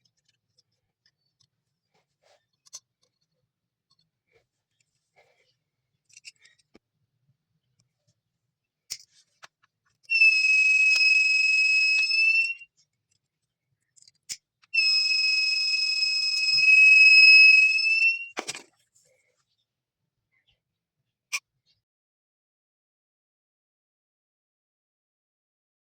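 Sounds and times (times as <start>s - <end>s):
high-pitched buzzer alarm tones: 10.1s - 12.6s, 14.8s - 18.4s.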